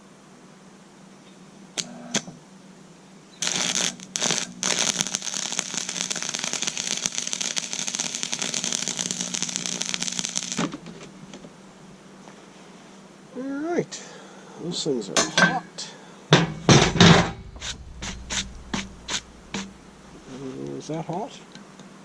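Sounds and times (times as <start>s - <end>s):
welding arc crackling: 3.4s - 11.5s, 16.7s - 20.3s
low hum: 16.4s - 20.6s.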